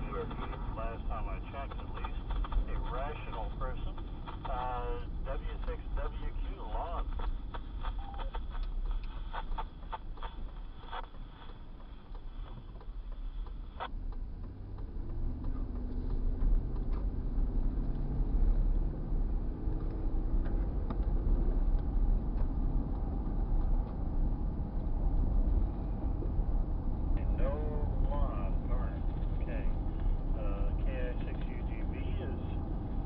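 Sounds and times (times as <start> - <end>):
car engine and road rumble: 0.0 - 33.0
click inside car: 5.4 - 18.6, 19.6 - 25.3.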